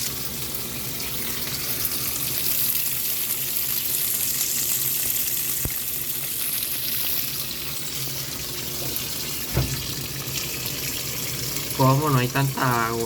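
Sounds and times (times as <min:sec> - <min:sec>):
water running into washing machine: 0:00.0 - 0:13.0
short knock: 0:09.5 - 0:09.8.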